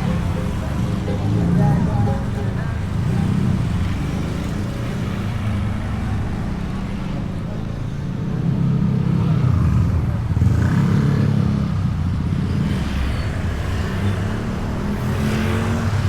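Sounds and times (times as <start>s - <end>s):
scooter engine running: 0.0s - 6.1s.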